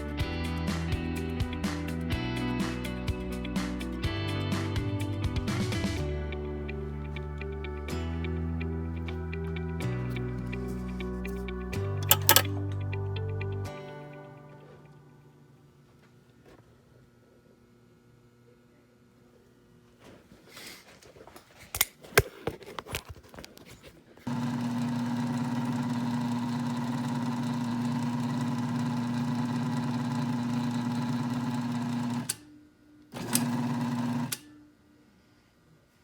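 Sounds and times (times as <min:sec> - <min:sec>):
clicks and knocks: 0:12.0 - 0:12.5
key-cutting machine motor humming: 0:12.0 - 0:12.5, 0:24.3 - 0:32.4, 0:33.2 - 0:34.4.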